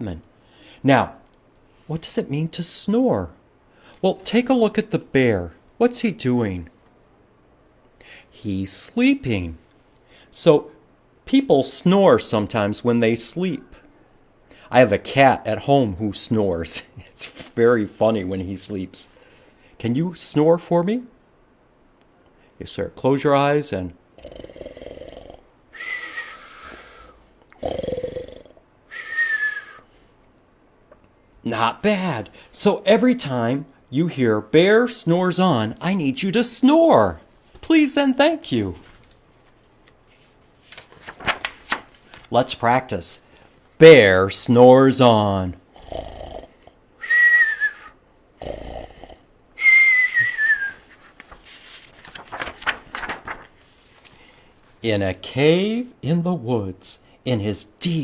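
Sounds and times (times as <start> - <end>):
rattling snore: 24.2 - 25.4, 27.6 - 28.6, 45.8 - 46.5, 48.4 - 49.2
whistling out-breath: 25.8 - 27.2, 28.9 - 30.0, 47.0 - 48.0, 49.6 - 50.9.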